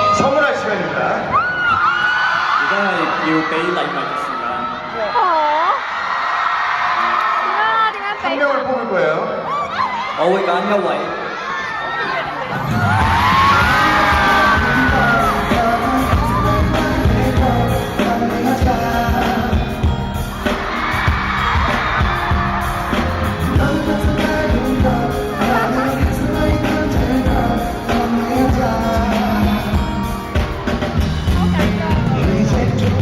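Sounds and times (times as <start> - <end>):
amplified pop music with singing: 12.4 - 33.0.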